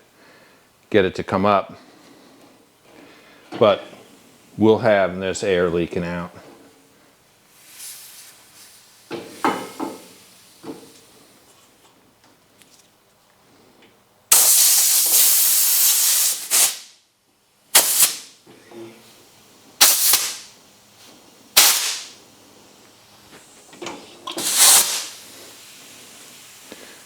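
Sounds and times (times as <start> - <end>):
compressed air hissing: 14.3 - 16.9, 17.7 - 18.4, 19.8 - 20.5, 21.6 - 22.2, 24.3 - 27.0.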